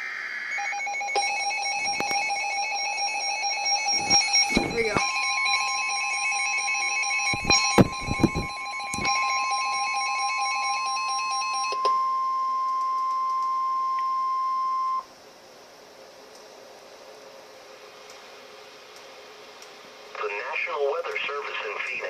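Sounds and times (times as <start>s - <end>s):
pulsing alarm stepping between pitches: 1.0s - 10.3s
steady high alert tone: 1.2s - 9.9s
knocks: 7.3s - 9.1s.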